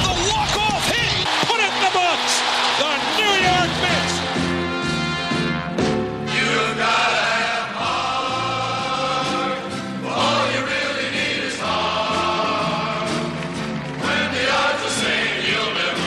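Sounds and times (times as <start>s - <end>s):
group of voices singing: 6.2s - 16.0s.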